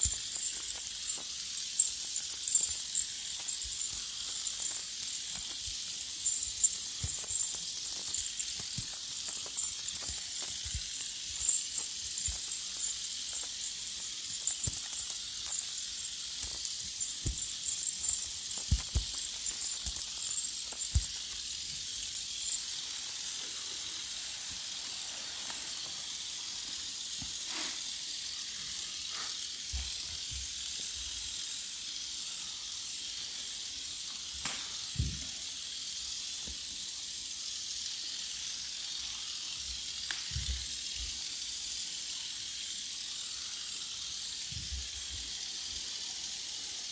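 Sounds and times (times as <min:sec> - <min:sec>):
fine high-pitched crackling: 0:00.0 - 0:29.5
faint hiss: 0:19.3 - 0:46.9.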